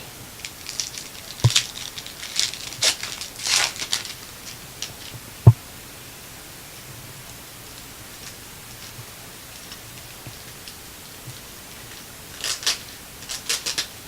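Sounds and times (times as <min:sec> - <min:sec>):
foil wrapper tearing and crinkling: 0:00.4 - 0:04.3, 0:12.3 - 0:14.0
low thumps: 0:05.1 - 0:05.9.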